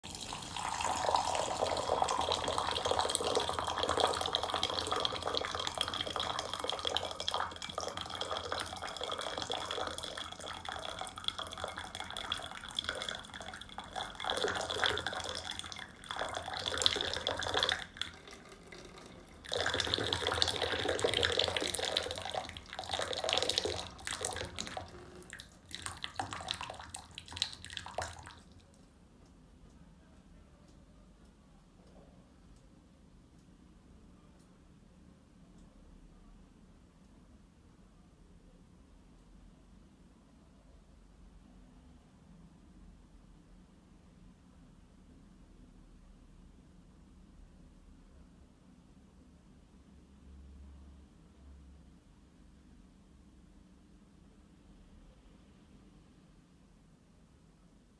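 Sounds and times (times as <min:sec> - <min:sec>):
hot water pouring into mug: 0:00.0 - 0:28.5.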